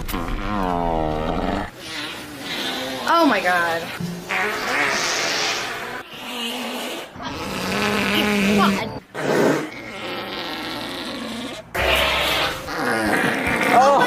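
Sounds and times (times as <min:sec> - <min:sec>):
man farting: 0:00.0 - 0:01.8, 0:06.2 - 0:14.0.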